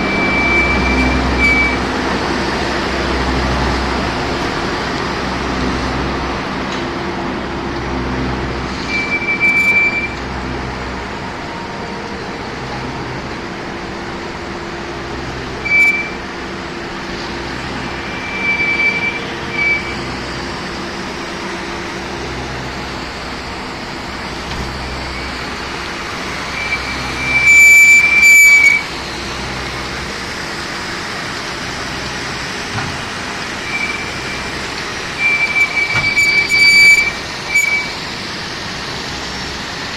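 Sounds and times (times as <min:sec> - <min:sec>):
short high-pitched squeals: 0:00.0 - 0:02.0, 0:08.7 - 0:10.3, 0:15.6 - 0:16.3, 0:17.8 - 0:20.8, 0:24.5 - 0:30.4, 0:33.4 - 0:38.2
steady mechanical din: 0:13.2 - 0:39.9.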